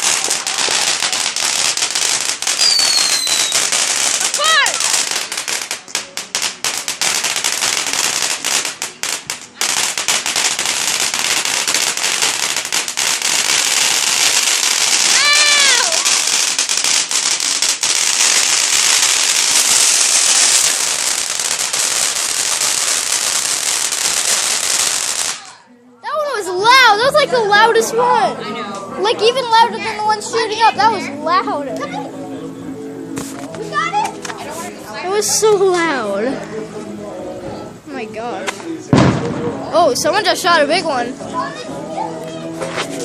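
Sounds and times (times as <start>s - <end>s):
fireworks sharp bangs: 0.0s - 25.6s, 38.5s - 40.6s
fireworks crackling barrage: 0.0s - 28.3s, 29.0s - 32.0s, 33.0s - 37.0s, 37.7s - 43.0s.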